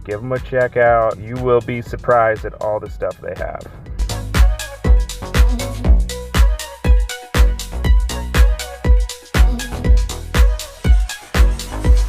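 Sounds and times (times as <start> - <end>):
background music with beat: 0.0 - 12.0
kick drum: 3.9 - 12.0.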